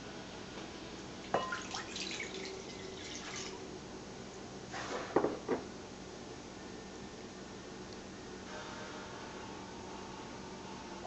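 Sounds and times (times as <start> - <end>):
light scraping and rustling: 4.7 - 5.3.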